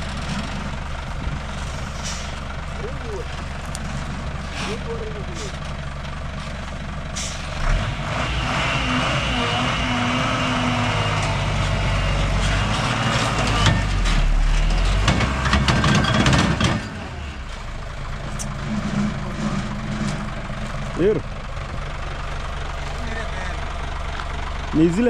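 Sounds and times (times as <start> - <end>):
car engine running: 0.0 - 9.6, 15.0 - 25.0.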